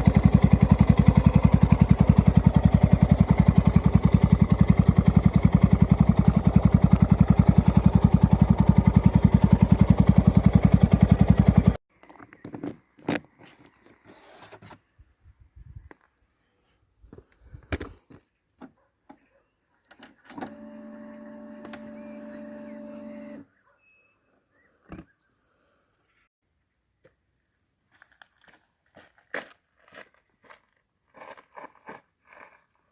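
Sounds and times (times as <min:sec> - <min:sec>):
motorcycle engine: 0:00.0 - 0:11.8.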